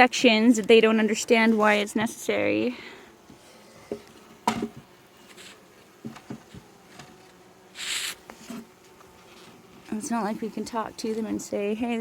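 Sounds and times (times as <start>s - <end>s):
bees buzzing: 0.0s - 12.0s
sharp knocks: 3.9s - 4.9s.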